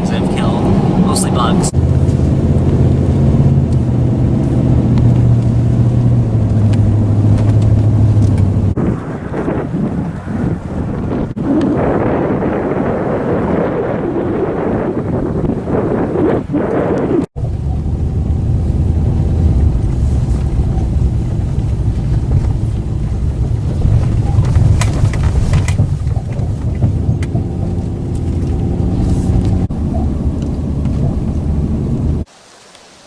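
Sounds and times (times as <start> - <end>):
engine and road noise in cabin: 0.0 - 10.7, 17.2 - 32.3
brief rattles: 19.6 - 29.7.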